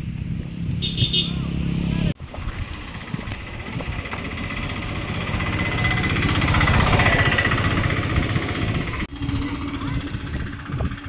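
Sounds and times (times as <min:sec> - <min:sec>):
small engine running: 0:02.8 - 0:11.0.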